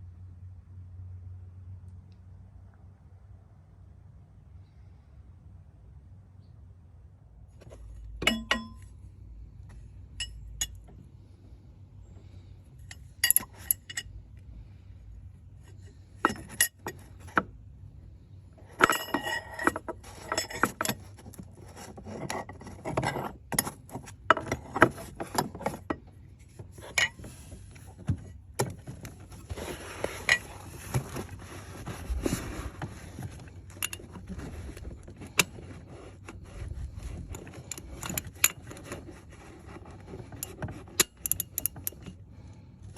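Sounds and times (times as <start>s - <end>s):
metal hand tools clinking: 12.9s - 14.0s.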